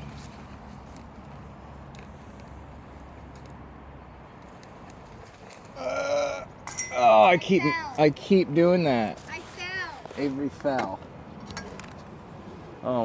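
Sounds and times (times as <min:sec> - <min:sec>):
child's voice: 0:07.3 - 0:08.1, 0:09.2 - 0:10.2.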